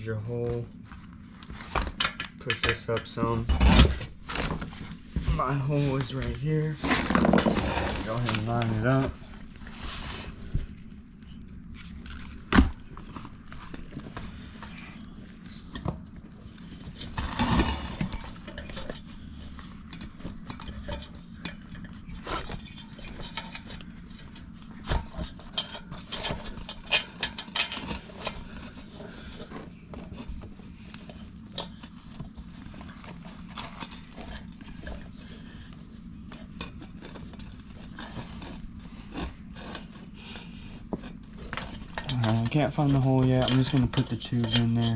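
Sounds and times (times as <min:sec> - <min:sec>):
rubber rustling: 0:07.0 - 0:09.8.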